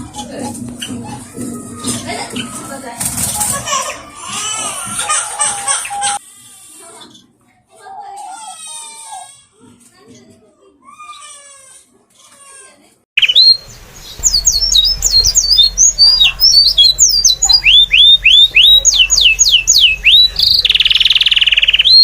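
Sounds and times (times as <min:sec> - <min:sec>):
harsh buzzy bird call: 0:13.2 - 0:22.0
small birds chirping: 0:13.2 - 0:22.0.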